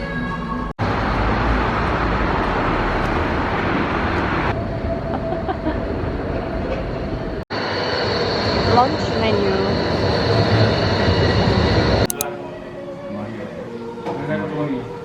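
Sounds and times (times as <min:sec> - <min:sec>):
vehicle rumbling: 0:00.8 - 0:07.4.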